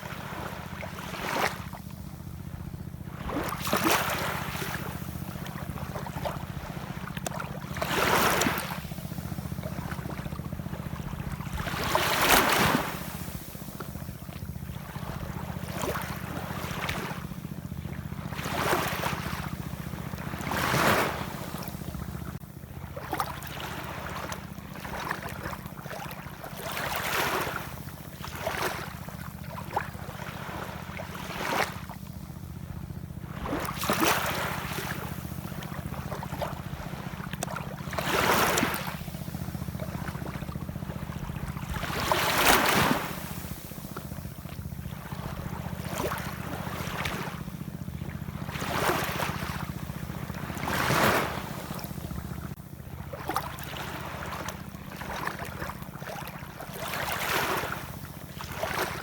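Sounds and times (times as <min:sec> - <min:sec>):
ocean waves washing in: 0:02.5 - 0:59.0
steady low rumble: 0:31.8 - 0:56.7.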